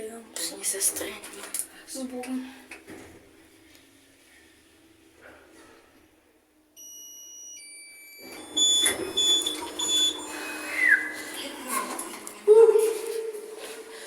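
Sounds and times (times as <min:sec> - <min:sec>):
short high beeps: 0:06.8 - 0:10.3
two-note electronic tone: 0:06.8 - 0:10.4.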